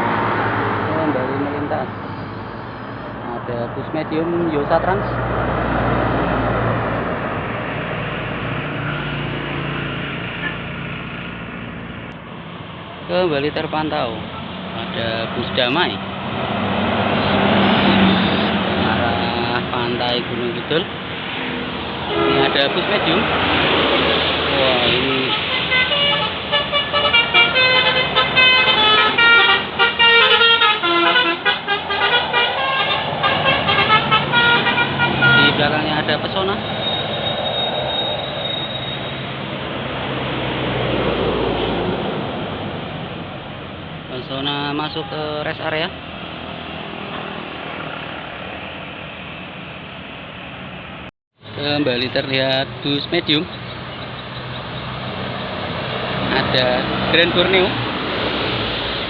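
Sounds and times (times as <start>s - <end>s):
tour bus driving past: 0.0s - 44.2s, 45.7s - 59.0s
multi-tone bus horn tune: 22.0s - 22.9s, 25.0s - 35.7s.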